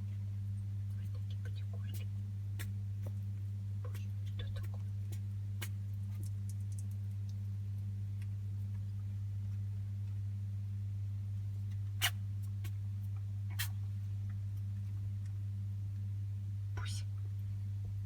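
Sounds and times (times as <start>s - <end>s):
low electrical hum: 0.0s - 18.0s
rat sneezing: 12.0s - 12.2s, 13.5s - 13.8s.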